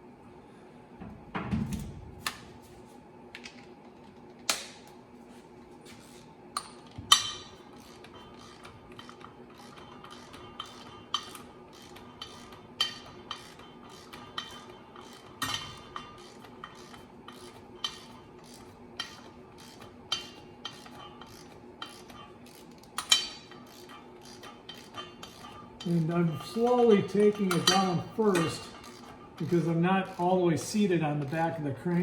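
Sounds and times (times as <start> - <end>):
ratchet clicking on bolts: 6.6 - 32.0.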